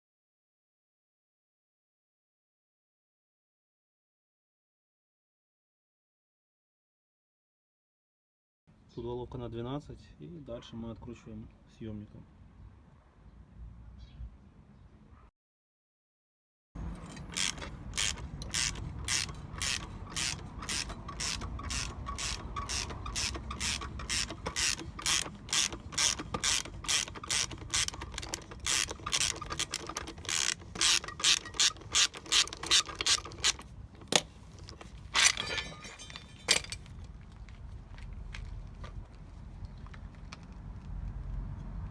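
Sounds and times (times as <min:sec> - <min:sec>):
ratchet wrench clicking: 0:16.9 - 0:35.4.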